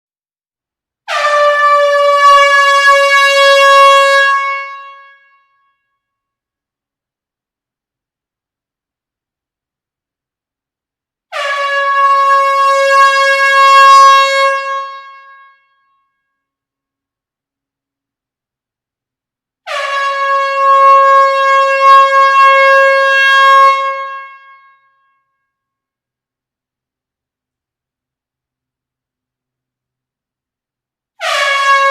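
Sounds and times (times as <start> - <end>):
air horn blast: 1.1 - 5.5, 11.3 - 15.8, 19.6 - 24.9, 31.2 - 31.9.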